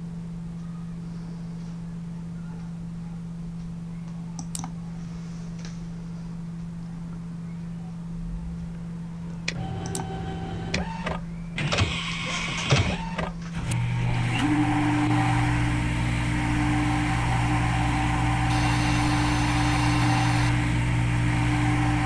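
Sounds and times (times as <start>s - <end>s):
clicks: 4.1s - 4.8s, 9.4s - 14.5s, 18.5s - 20.6s
electric motor whirring: 9.6s - 22.0s.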